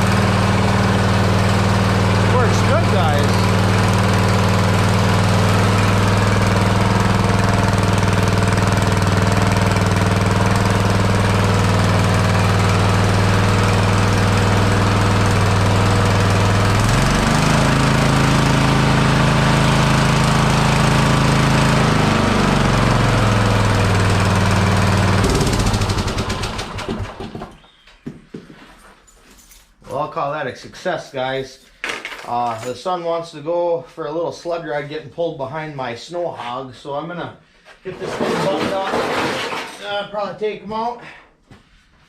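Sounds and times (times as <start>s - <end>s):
lawnmower engine running: 0.0s - 27.6s.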